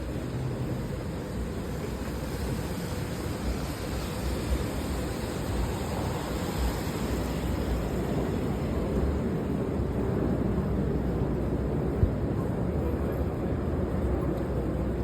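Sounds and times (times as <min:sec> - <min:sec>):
rain falling: 0:00.0 - 0:09.2.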